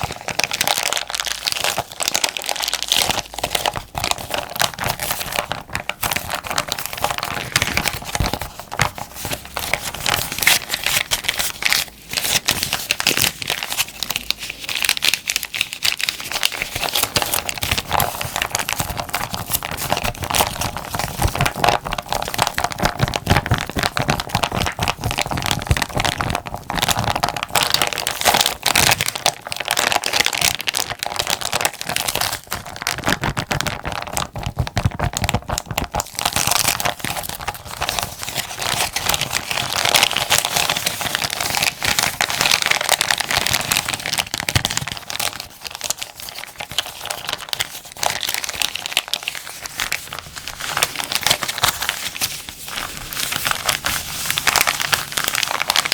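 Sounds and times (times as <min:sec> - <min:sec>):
plastic bag crinkling: 0:00.0 - 0:55.9.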